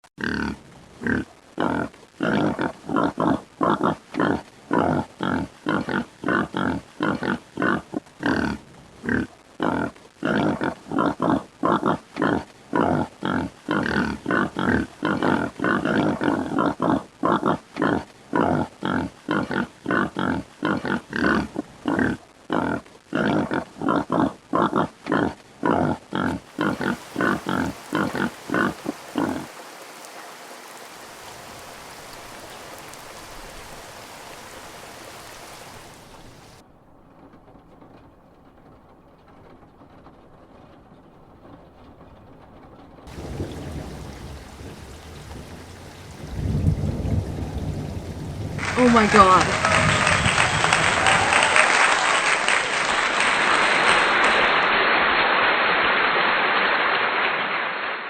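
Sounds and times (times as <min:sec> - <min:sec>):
hippopotamus grunting: 0:00.2 - 0:29.5.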